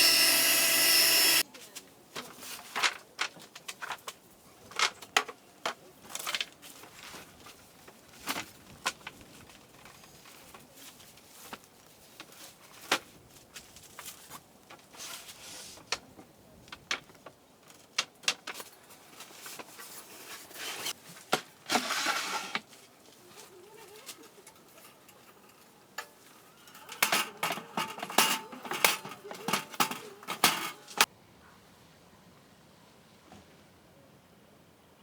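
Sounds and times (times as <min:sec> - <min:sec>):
rustling: 0:17.0 - 0:31.1
handling clicks and knocks: 0:24.4 - 0:31.1.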